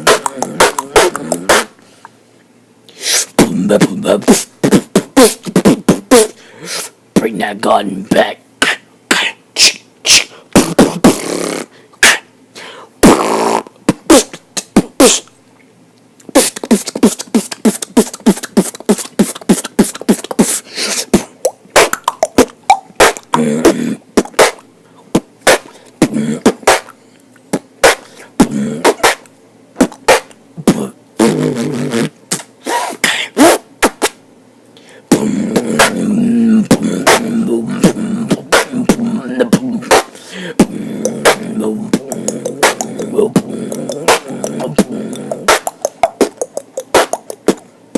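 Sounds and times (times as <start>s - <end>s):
beatboxing vocal percussion: 0.0s - 2.2s, 2.9s - 15.4s, 16.2s - 34.2s, 34.8s - 47.9s
hummed bass notes: 40.6s - 47.6s.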